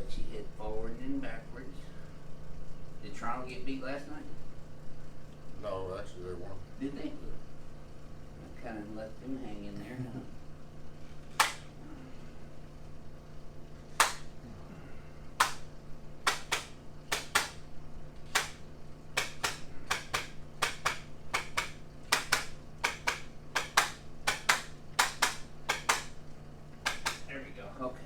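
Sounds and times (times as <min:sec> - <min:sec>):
adjusting instrument sharp clicks: 0:15.4 - 0:17.6, 0:18.2 - 0:26.2, 0:26.8 - 0:27.3.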